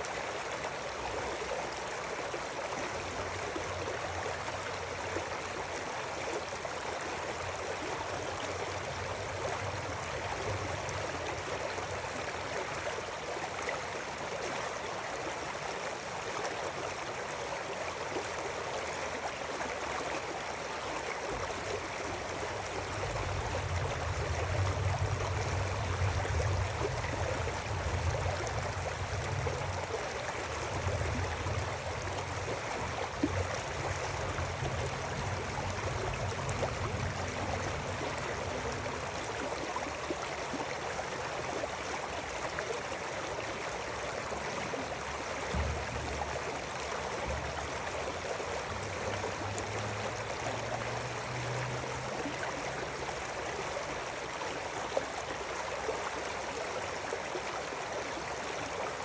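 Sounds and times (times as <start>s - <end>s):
river water flowing: 0.0s - 59.0s
low rumble: 22.1s - 39.7s.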